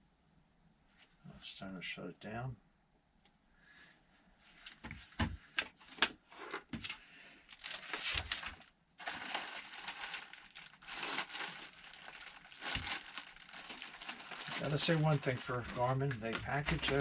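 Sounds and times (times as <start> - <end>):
packaging crinkling and rustling: 5.8 - 17.0.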